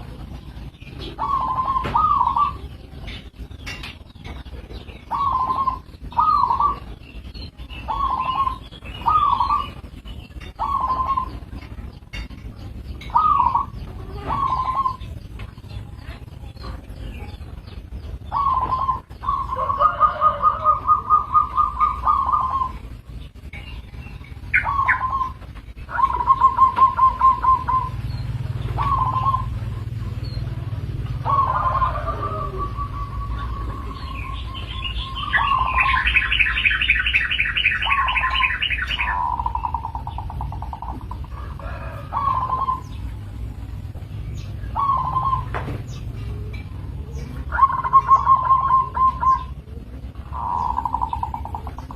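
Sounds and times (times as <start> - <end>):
doves trilling coos: 0.0 - 51.9.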